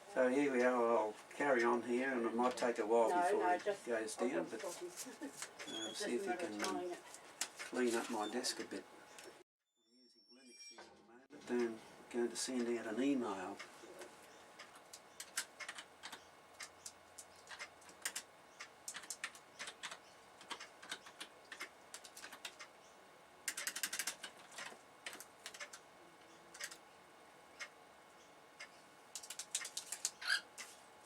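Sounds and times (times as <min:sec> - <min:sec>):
computer keyboard typing: 0:14.7 - 0:18.3, 0:18.9 - 0:22.7, 0:23.5 - 0:25.8, 0:26.5 - 0:26.8, 0:29.1 - 0:30.2.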